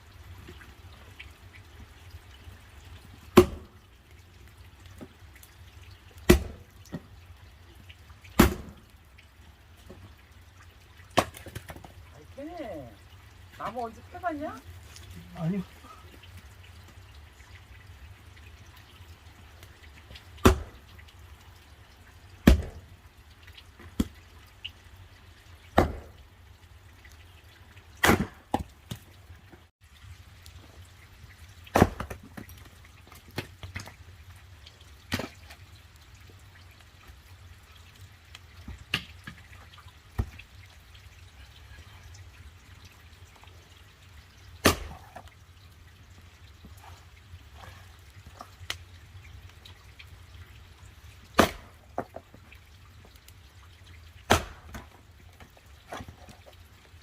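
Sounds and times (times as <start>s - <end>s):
axe chopping firewood: 3.3s - 3.8s, 6.2s - 7.1s, 8.4s - 8.8s, 11.1s - 11.9s, 20.4s - 20.8s, 22.4s - 22.9s, 25.8s - 26.2s, 28.0s - 29.0s, 31.7s - 32.6s, 35.1s - 35.4s, 44.6s - 45.2s, 51.4s - 52.2s, 54.3s - 55.0s.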